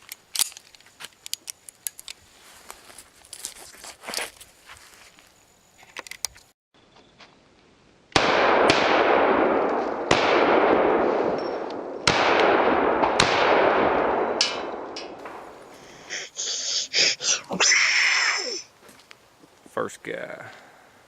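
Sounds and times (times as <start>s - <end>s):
gunshots with echo: 8.2s - 15.5s.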